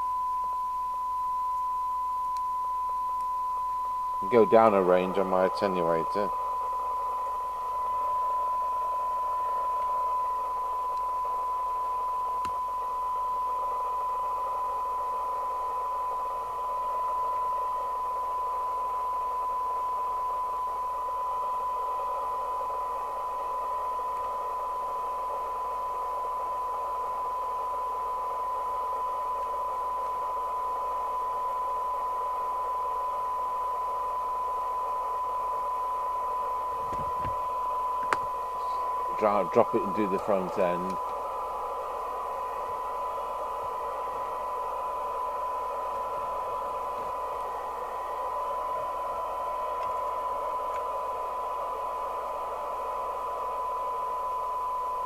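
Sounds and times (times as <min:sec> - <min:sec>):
radio test tone: 0:00.0 - 0:55.0
radio receiver hiss: 0:04.2 - 0:13.1, 0:31.7 - 0:55.0.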